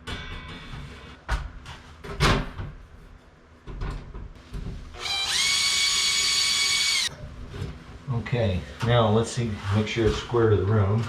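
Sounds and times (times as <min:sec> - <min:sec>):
power drill whining: 0:05.0 - 0:07.1.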